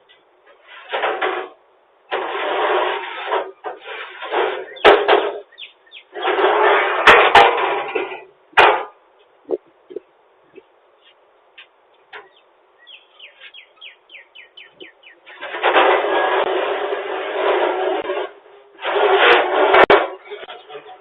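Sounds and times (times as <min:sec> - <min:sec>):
washing machine scraping and grinding: 0:00.5 - 0:08.8, 0:14.9 - 0:21.0
sharp bangs: 0:06.1 - 0:09.6.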